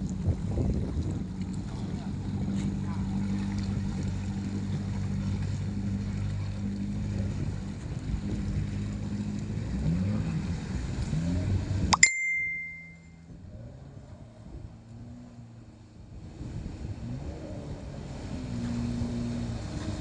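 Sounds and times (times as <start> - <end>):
jet ski engine running: 0.0 - 20.0
sharp metallic ding: 12.0 - 13.2.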